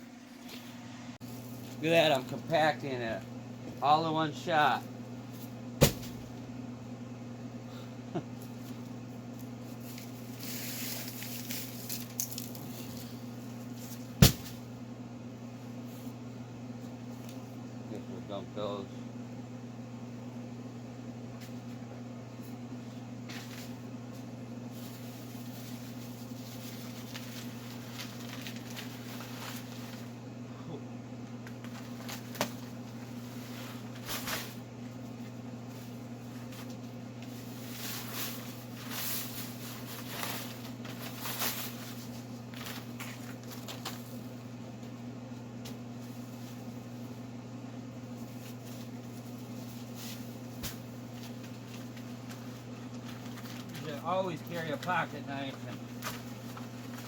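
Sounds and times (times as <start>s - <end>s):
steady low hum: 0.0s - 57.0s
cement pouring and rustling: 24.8s - 30.1s.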